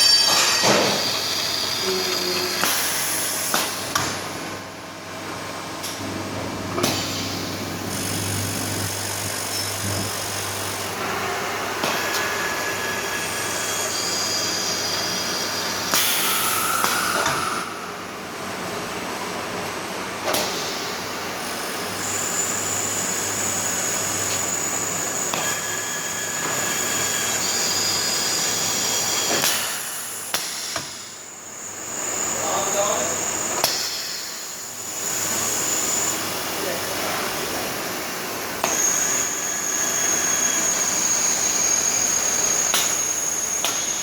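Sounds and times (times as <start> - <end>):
machine humming and whining: 0.0 - 44.0
air hissing burst: 11.9 - 18.1.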